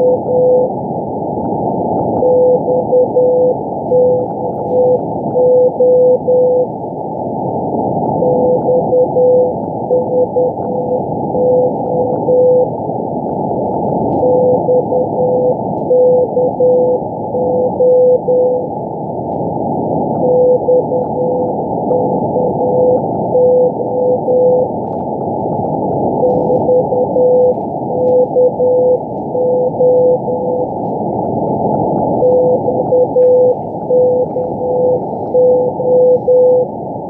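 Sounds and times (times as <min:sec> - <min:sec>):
morse code tone beeping: 0:00.0 - 0:00.8, 0:02.2 - 0:06.8, 0:08.2 - 0:12.8, 0:14.1 - 0:18.8, 0:20.2 - 0:24.8, 0:26.1 - 0:36.8
radio band noise hiss: 0:06.6 - 0:37.0.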